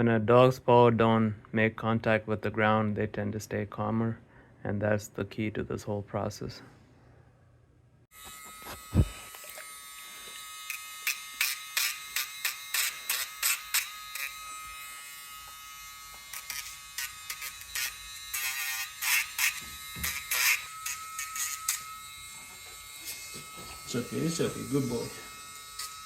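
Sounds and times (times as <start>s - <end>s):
grinder grinding nails: 8.2s - 26.0s
nail grinder humming: 8.2s - 26.0s.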